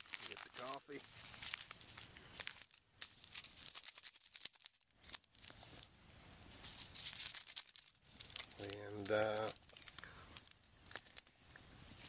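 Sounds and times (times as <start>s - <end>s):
packets crinkling and tearing: 0.0s - 12.0s
sharp crackles: 0.0s - 12.0s.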